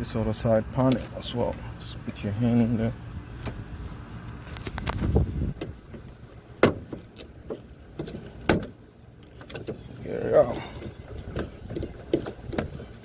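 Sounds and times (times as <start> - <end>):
plastic panel rubbing and knocking: 10.8 - 13.0.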